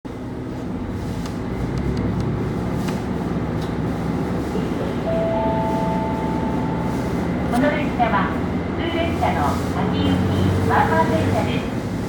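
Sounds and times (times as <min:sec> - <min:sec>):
railcar engine hum: 0:00.1 - 0:12.0.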